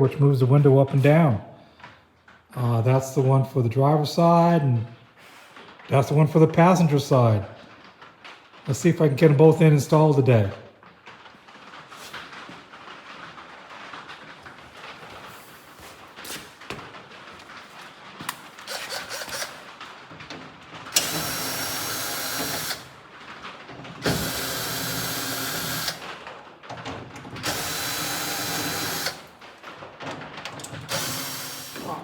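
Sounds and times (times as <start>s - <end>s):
tools clicking and rattling: 18.2s - 32.0s
power drill running: 18.6s - 19.7s, 21.0s - 22.9s, 24.0s - 26.0s, 27.4s - 29.3s, 30.9s - 32.0s.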